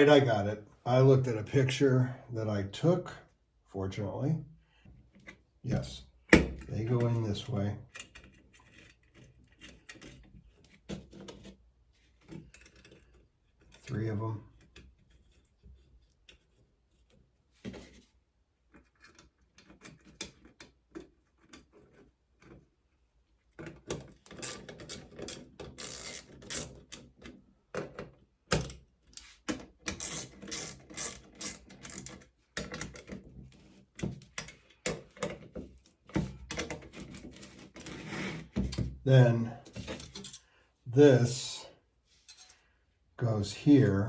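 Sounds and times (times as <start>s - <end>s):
small metal parts clicking: 24.3s - 27.0s, 29.9s - 32.9s, 39.9s - 40.4s.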